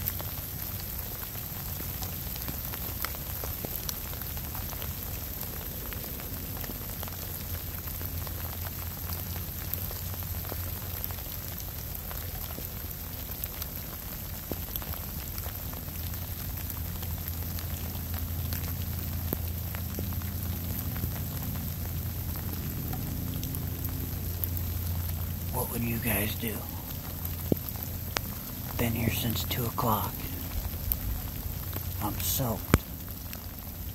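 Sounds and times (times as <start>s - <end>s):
rain pattering: 0.0s - 33.9s
low rumble: 18.6s - 33.9s.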